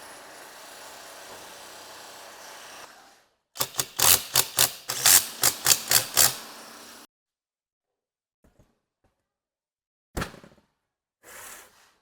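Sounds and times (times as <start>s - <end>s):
sharp clicks: 3.6s - 6.5s.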